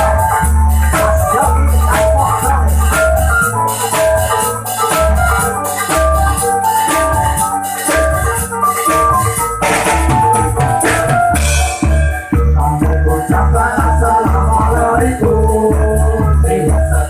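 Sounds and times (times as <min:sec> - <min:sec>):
loud dance music: 0:00.0 - 0:08.3, 0:08.9 - 0:17.0
pounding bass beat: 0:00.0 - 0:17.0.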